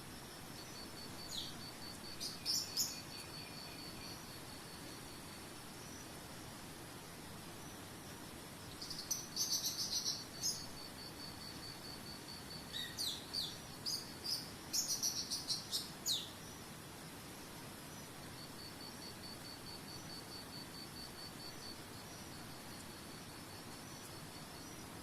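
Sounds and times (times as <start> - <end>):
insect trill: 0.0 - 25.0
songbird chirping and whistling: 12.7 - 16.4.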